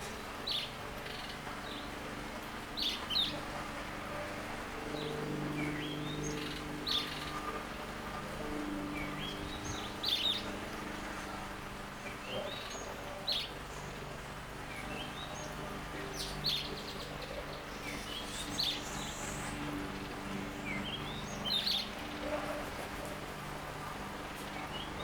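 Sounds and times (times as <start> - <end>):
garden bird chirping: 12.0 - 25.0.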